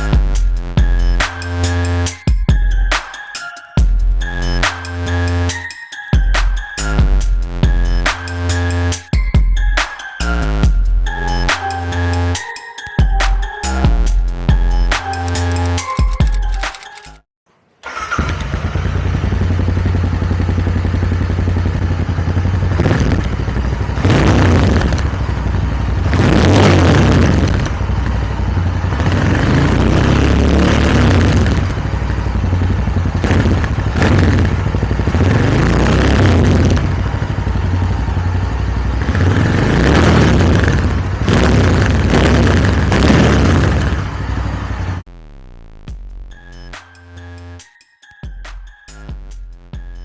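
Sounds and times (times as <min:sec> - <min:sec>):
motorcycle engine revving: 0:17.9 - 0:46.3.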